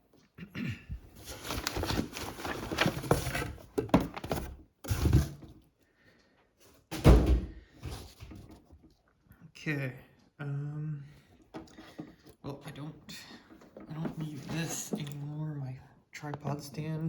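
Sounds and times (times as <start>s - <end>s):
packaging rustling: 1.2s - 5.3s.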